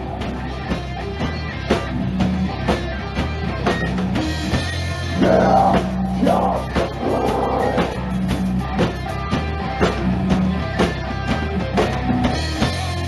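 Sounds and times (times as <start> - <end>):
rock band playing: 0.0 - 13.0
person singing: 5.2 - 8.0.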